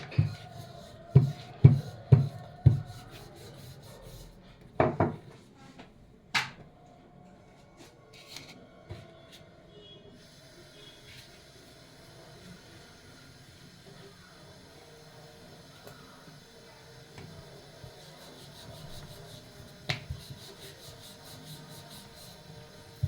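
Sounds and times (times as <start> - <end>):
dough knocking on wooden board: 0.1 - 0.5, 1.2 - 3.0, 4.8 - 5.2
dough rubbing on board: 0.1 - 4.4, 17.9 - 23.0.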